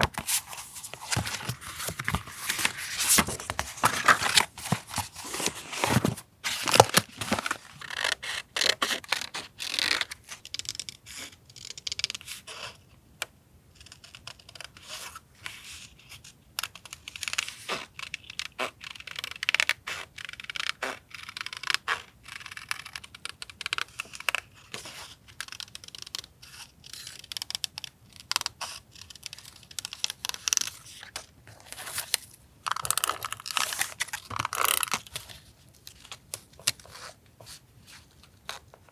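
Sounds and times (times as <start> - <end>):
paper rustling and crinkling: 0.0 - 9.4.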